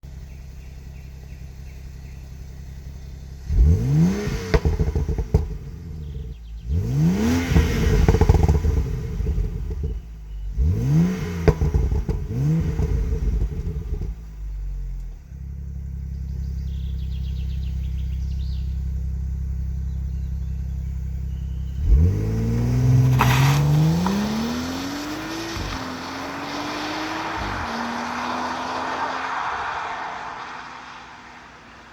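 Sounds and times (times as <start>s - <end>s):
car engine idling and revving: 0.0s - 31.9s
car accelerating hard: 3.4s - 15.0s, 21.4s - 31.9s.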